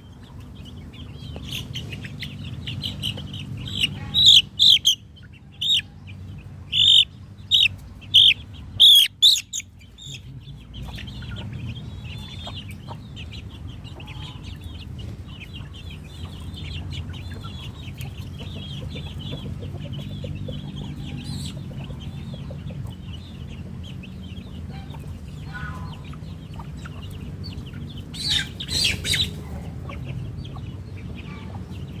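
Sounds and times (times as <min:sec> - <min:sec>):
chickens clucking and squawking: 0:00.0 - 0:32.0.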